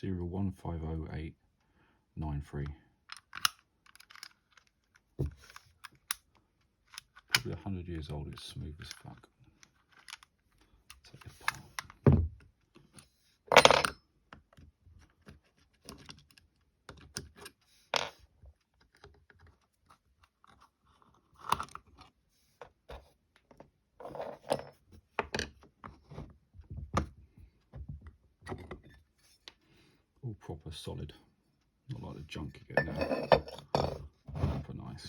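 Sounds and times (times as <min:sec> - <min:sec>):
metal lock parts clicking: 0:03.1 - 0:07.5, 0:13.5 - 0:14.0.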